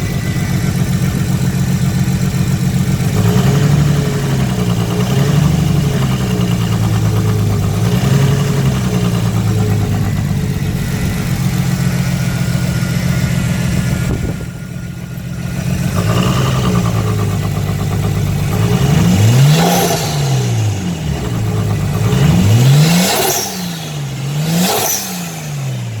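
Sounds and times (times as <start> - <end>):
car engine idling and revving: 0.0 - 26.0
strange engine noise: 0.0 - 26.0.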